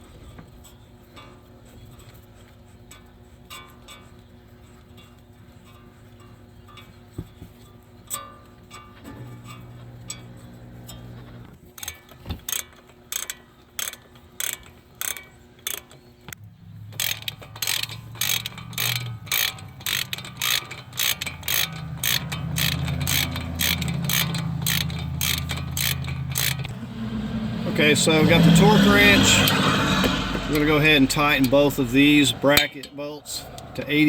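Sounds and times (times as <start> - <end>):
low steady hum: 0.0 - 34.0
socket ratchet clicking: 11.8 - 16.0, 16.9 - 26.8.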